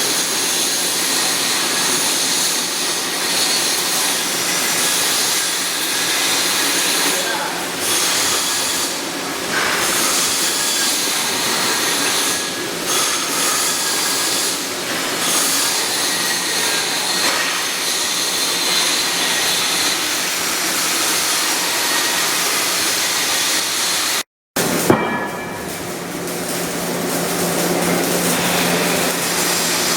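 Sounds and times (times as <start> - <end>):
welding arc hissing: 19.2 - 29.9.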